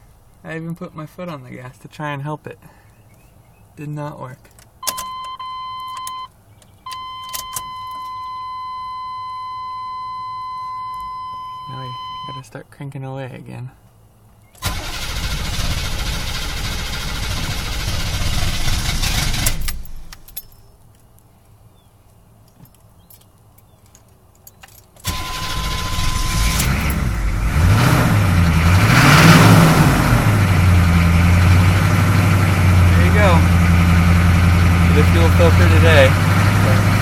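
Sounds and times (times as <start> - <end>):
diesel engine cranking and idling: 14.6 - 20.3, 25.0 - 37.0.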